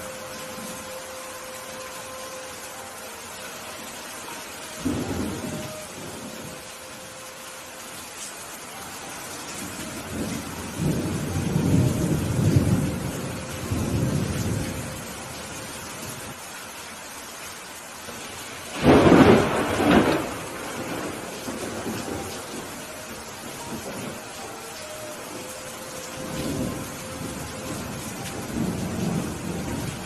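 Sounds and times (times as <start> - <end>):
steady rain falling: 0.0 - 30.0
rolling thunder: 9.6 - 15.1, 18.7 - 24.3.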